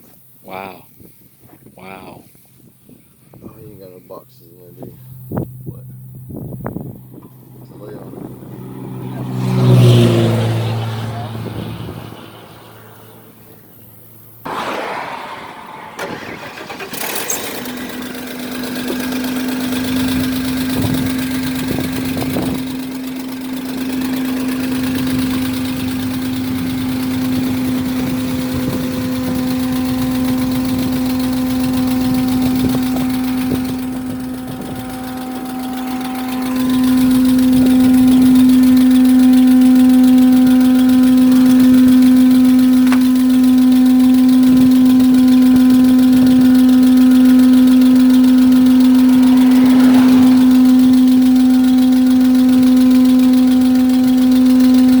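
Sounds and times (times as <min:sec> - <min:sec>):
engine idling: 0:02.3 - 0:55.0.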